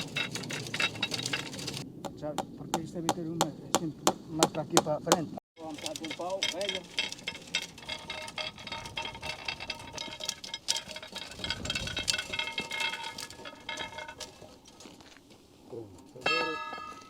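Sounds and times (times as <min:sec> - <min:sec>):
metallic clinking and jingling: 0:00.0 - 0:01.8, 0:05.6 - 0:15.1, 0:16.2 - 0:17.0.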